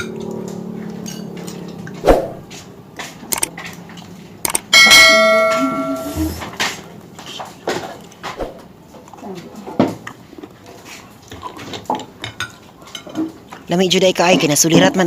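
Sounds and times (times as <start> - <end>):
small clicks: 3.3 - 3.5, 4.4 - 4.6
bell-like ring: 4.7 - 6.3.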